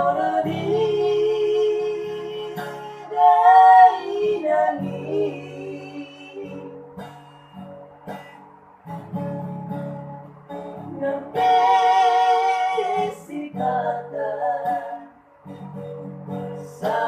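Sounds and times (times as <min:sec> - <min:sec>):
person singing: 0:00.0 - 0:06.7, 0:10.8 - 0:15.2, 0:16.6 - 0:17.0
acoustic guitar strumming: 0:00.0 - 0:17.0.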